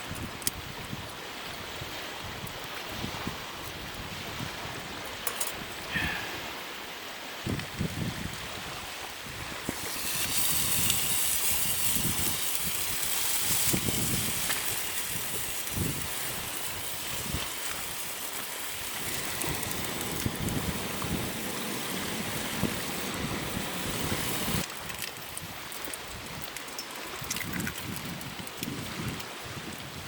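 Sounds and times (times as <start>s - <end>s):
wind buffeting microphone: 7.4s - 26.5s, 27.1s - 30.0s
water rushing: 8.4s - 28.2s.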